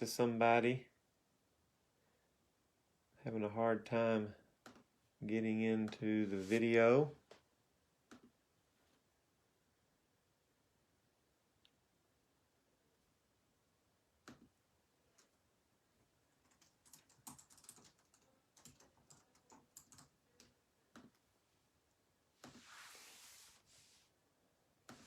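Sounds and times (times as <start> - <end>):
keyboard typing: 16.4 - 21.2.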